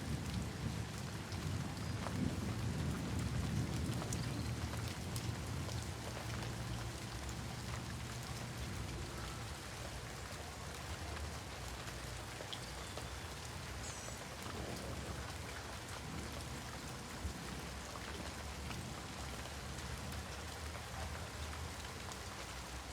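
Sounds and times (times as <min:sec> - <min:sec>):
heavy rain pattering: 0:00.0 - 0:22.9.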